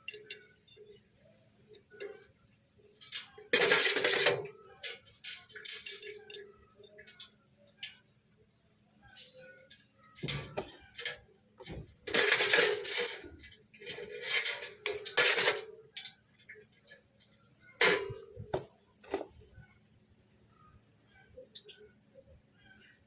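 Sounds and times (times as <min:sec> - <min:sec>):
metal parts clinking and scraping: 0:10.2 - 0:15.7.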